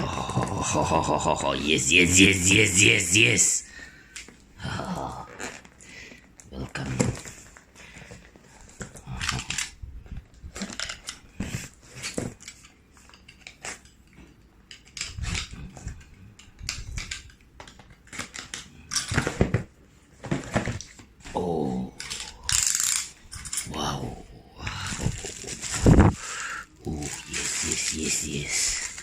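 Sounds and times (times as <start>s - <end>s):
clicks and knocks of handled items: 5.6s - 21.4s, 22.0s - 23.7s, 24.8s - 26.2s
packaging rustling and tearing: 24.8s - 29.0s.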